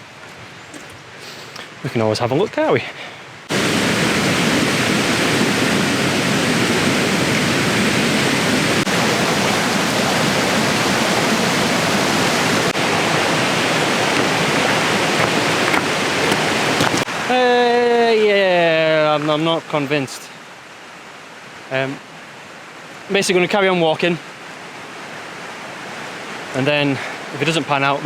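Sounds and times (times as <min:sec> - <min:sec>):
water rushing over waterfall: 0:03.5 - 0:17.5.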